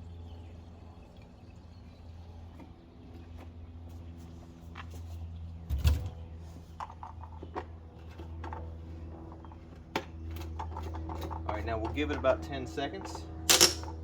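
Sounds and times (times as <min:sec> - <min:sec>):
objects clicking and knocking: 0:13.5 - 0:14.0.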